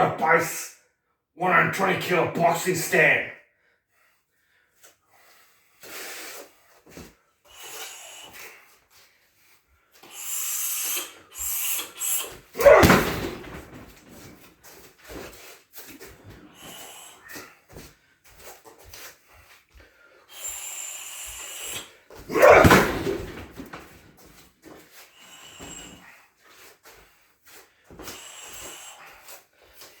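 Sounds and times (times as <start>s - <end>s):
sharp hissing breaths: 5.1s - 6.8s, 7.4s - 13.6s, 16.5s - 17.7s, 20.0s - 22.1s, 25.1s - 26.3s, 28.0s - 29.5s
kicks thudding into pad: 12.6s - 13.9s, 22.3s - 23.9s.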